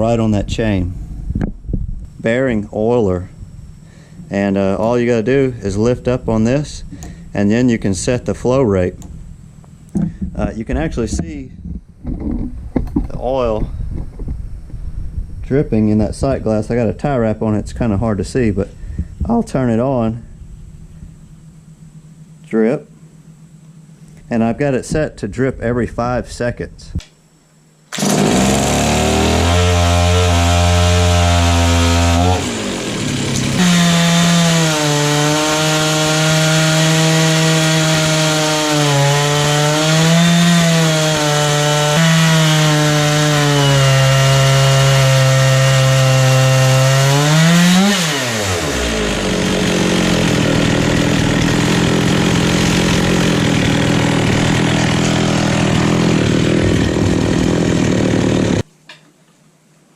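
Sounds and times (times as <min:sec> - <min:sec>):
chainsaw cutting log: 0:27.9 - 0:58.7.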